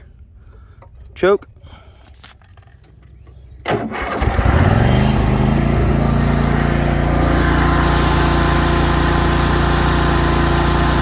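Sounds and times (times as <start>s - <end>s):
riding mower engine running: 3.6s - 11.0s.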